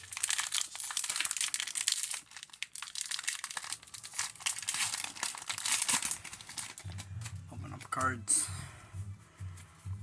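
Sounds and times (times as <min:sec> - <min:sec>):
foil wrapper crinkling: 0:00.0 - 0:08.2.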